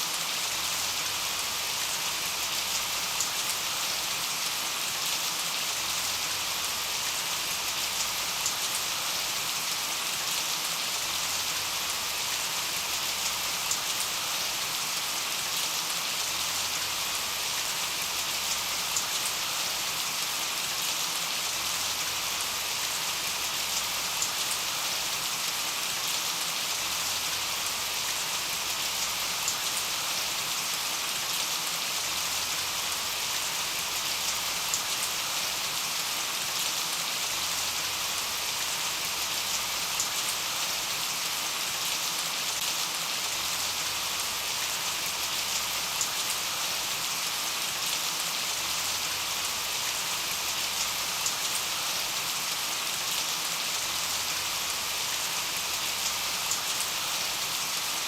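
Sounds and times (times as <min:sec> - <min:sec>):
steady rain hiss: 0:00.0 - 0:58.0
rain drop ticks: 0:29.4 - 0:29.8, 0:34.3 - 0:35.2, 0:50.6 - 0:51.7, 0:56.0 - 0:57.0.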